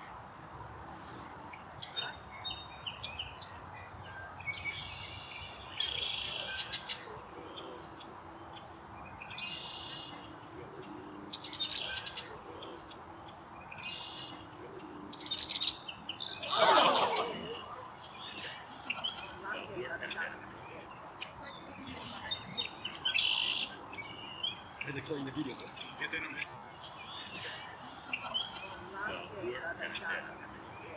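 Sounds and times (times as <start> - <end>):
birds chirping: 0.7 - 30.9
bird call sweeping downward: 16.1 - 17.6.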